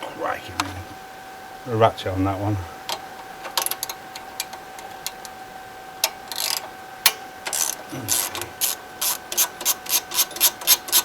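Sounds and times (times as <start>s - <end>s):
ratchet wrench clicking: 6.3s - 6.7s, 7.5s - 11.0s.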